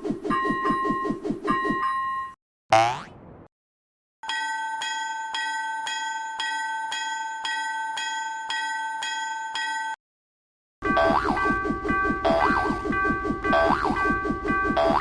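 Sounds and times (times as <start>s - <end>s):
level crossing warning bell: 4.2s - 10.0s, 10.8s - 15.0s.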